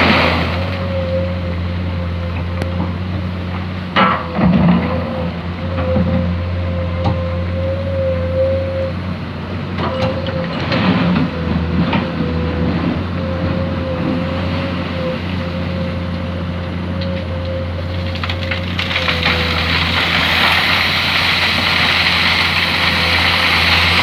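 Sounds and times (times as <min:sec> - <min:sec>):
excavator diesel engine running: 0:00.0 - 0:24.0
hydraulic whine: 0:00.0 - 0:24.0
bucket scraping through sand: 0:18.1 - 0:24.0.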